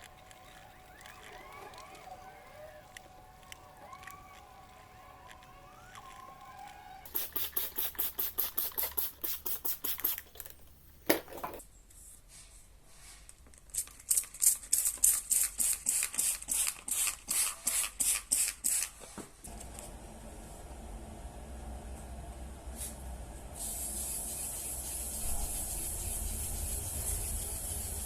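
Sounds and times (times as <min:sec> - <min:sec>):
sandpaper scraping plastic: 0:24.2 - 0:28.0.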